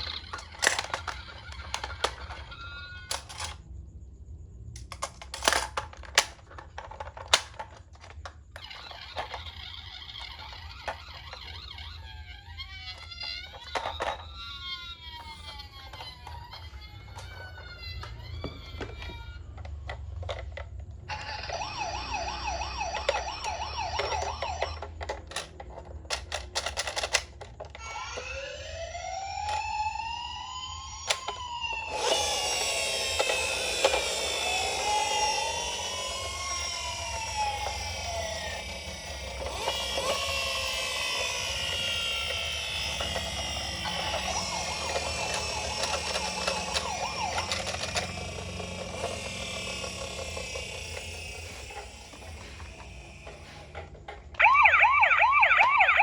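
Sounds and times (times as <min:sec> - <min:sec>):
toy electronic siren: 0:00.0 - 0:03.6, 0:04.8 - 0:56.0.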